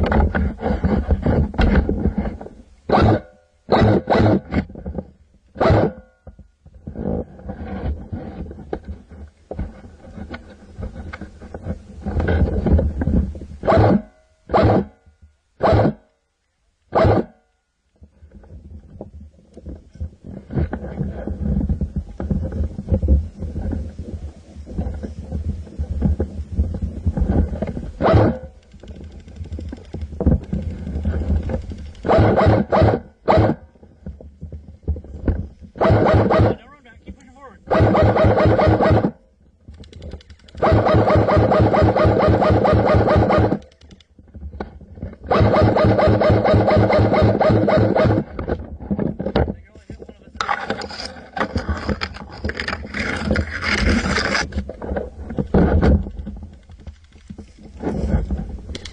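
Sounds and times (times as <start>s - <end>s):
rumbling movement: 0.0s - 5.6s, 6.3s - 14.1s, 18.0s - 58.9s
wind noise: 6.6s - 14.9s, 18.0s - 58.9s
airsoft rifle firing bursts: 35.8s - 36.6s, 37.7s - 39.1s, 40.6s - 43.6s, 45.3s - 48.2s.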